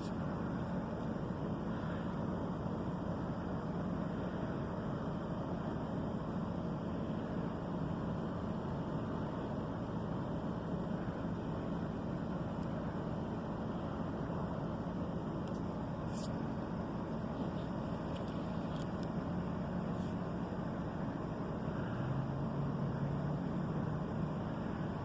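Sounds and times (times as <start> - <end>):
swather engine droning: 0.0 - 25.0.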